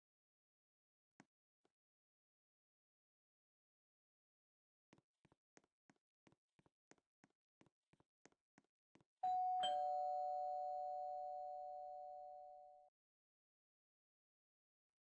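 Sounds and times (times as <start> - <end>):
two-tone doorbell chime: 9.2 - 12.9.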